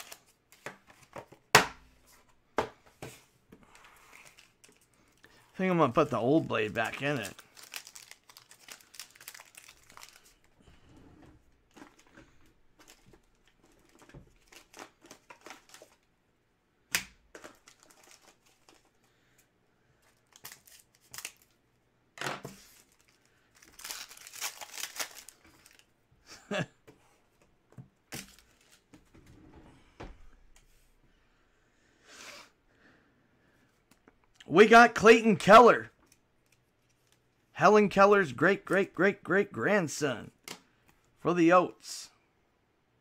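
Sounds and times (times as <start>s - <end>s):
plastic wrapping crinkling and tearing: 0.0s - 0.3s, 4.1s - 5.2s, 6.0s - 10.6s, 12.8s - 16.0s, 17.3s - 19.0s, 20.1s - 21.6s, 22.6s - 25.9s.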